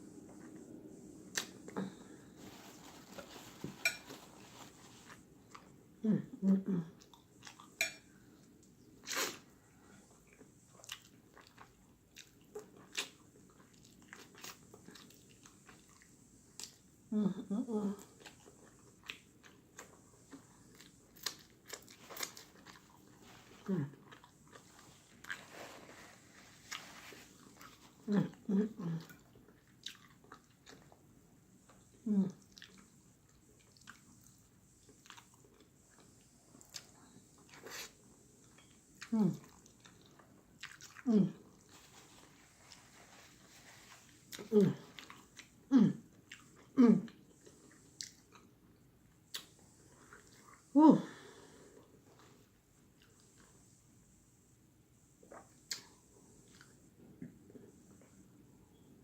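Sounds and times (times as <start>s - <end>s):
chewing: 7.0s - 8.0s, 10.2s - 16.8s, 18.0s - 48.6s
wet mouth clicks and smacks: 55.3s - 55.9s.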